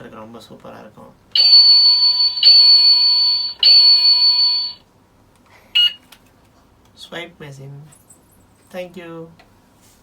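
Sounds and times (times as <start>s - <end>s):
toy machine electronic beeps: 1.4s - 4.8s, 5.8s - 6.0s.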